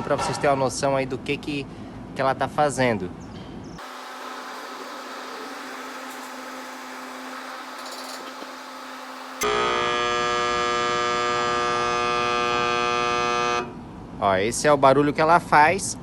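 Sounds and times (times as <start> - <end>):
air conditioner fan running: 3.8 - 9.4
loud electrical buzz: 3.8 - 13.8.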